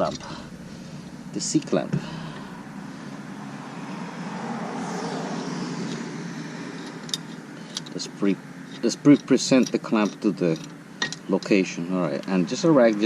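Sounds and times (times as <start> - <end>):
vehicle passing by: 0.0 - 9.1.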